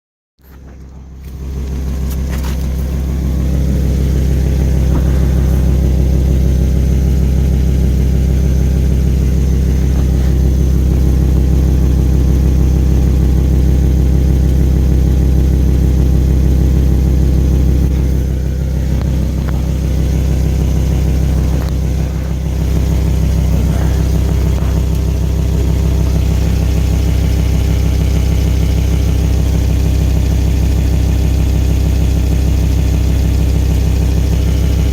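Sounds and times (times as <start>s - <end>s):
car engine idling: 0.4s - 34.9s.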